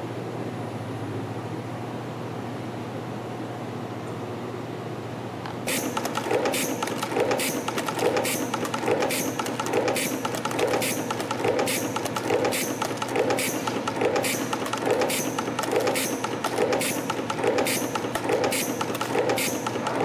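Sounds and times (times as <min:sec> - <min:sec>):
steady machine hum: 0:00.0 - 0:20.0
spring coiling machine running: 0:05.6 - 0:20.0.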